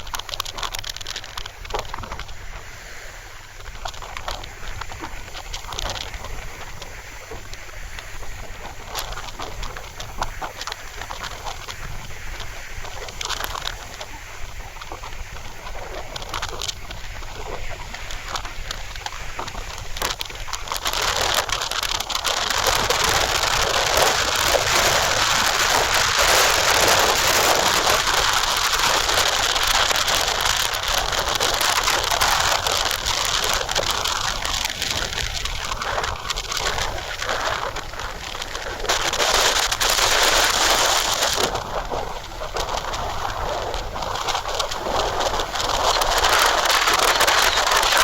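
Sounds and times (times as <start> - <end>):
wind blowing in gusts: 0.0 - 48.0
wind rumble on microphone: 0.0 - 48.0.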